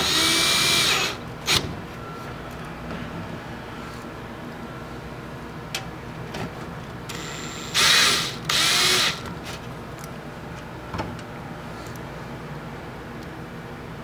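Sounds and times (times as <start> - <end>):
power drill driving screws: 0.0 - 1.6, 7.1 - 9.2.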